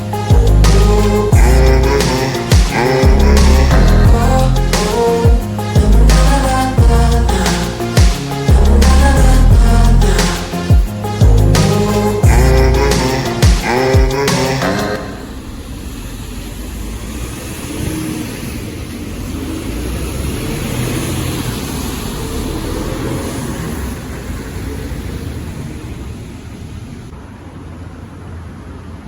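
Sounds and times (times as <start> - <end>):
vehicle engine rumble: 0.0 - 5.1
music: 0.0 - 15.0.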